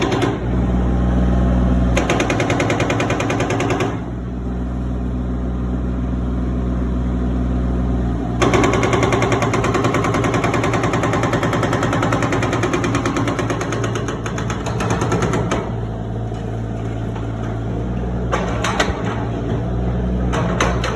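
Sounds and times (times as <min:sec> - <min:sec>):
hydraulic breaker hammering concrete: 0:00.0 - 0:00.6, 0:02.0 - 0:04.2, 0:08.4 - 0:15.9, 0:20.3 - 0:20.9.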